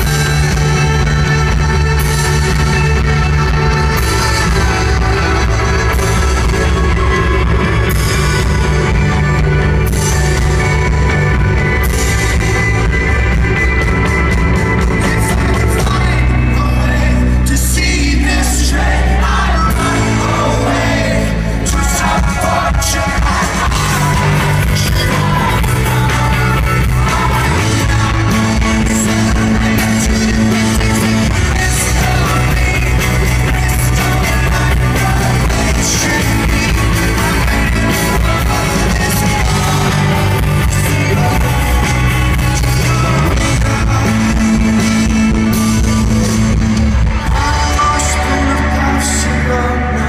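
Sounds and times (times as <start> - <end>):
bass line: 0.0 - 50.0
rock band playing live: 0.0 - 50.0
person singing: 14.7 - 50.0.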